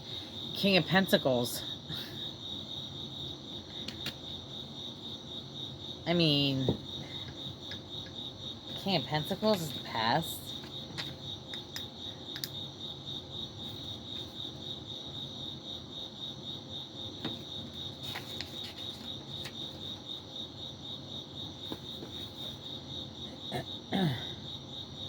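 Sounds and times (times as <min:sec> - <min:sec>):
insect chirping: 0:00.0 - 0:25.0.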